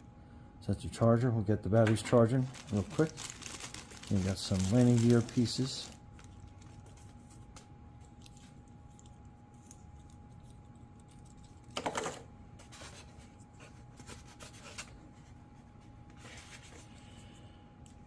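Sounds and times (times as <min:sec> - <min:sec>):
faint steady hum: 0:00.0 - 0:18.0
hands handling packaging: 0:01.9 - 0:09.2
packaging rustle: 0:02.1 - 0:09.1.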